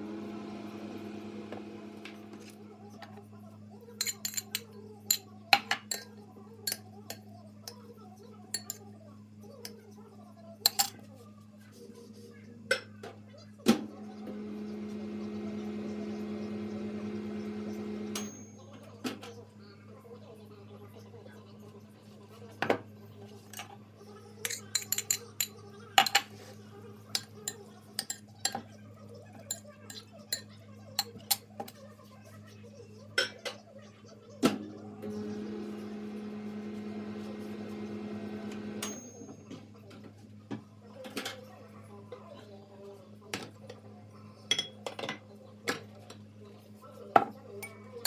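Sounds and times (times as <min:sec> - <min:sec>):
microwave oven humming: 0:00.0 - 0:03.9, 0:13.3 - 0:22.0, 0:33.7 - 0:39.8.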